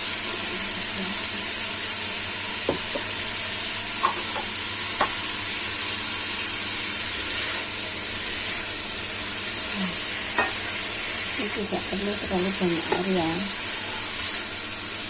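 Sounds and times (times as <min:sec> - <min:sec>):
food sizzling in a pan: 0:00.0 - 0:15.0
utensil knocking against pan: 0:02.7 - 0:03.1, 0:04.0 - 0:05.2, 0:10.4 - 0:10.6, 0:12.9 - 0:13.2.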